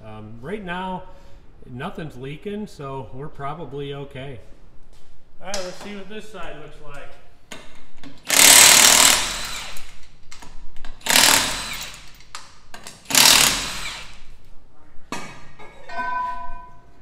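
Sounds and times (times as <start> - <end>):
impact wrench bursts: 8.2 - 10.1, 10.9 - 14.3.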